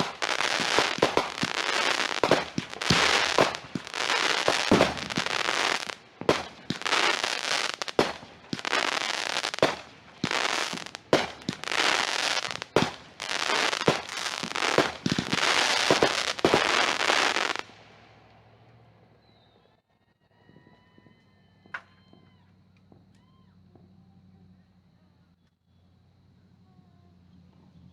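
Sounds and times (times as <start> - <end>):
fireworks sharp bangs: 0.0 - 17.9
fireworks crackling: 0.0 - 18.3.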